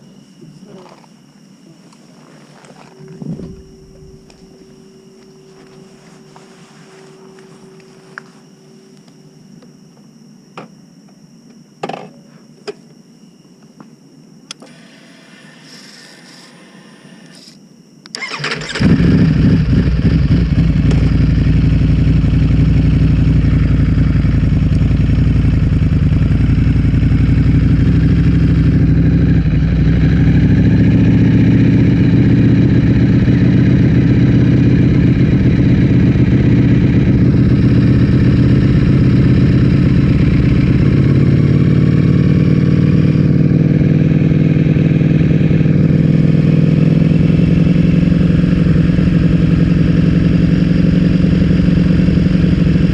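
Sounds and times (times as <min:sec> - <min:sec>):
motorcycle engine running: 0:02.8 - 0:08.2, 0:18.1 - 0:52.9.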